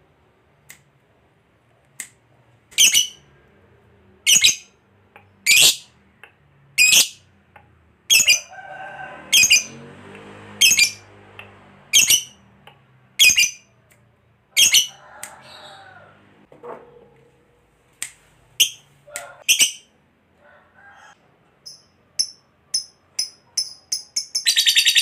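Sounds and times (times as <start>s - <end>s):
bird squawking shrilly: 5.5s - 5.9s, 11.9s - 12.4s.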